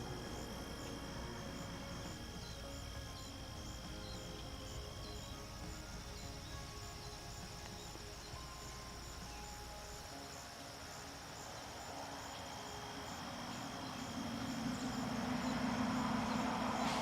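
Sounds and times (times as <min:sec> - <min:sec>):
high pulsing chirring: 0:00.0 - 0:17.0
soft scattered notes: 0:00.0 - 0:17.0
rushing noise: 0:11.1 - 0:17.0.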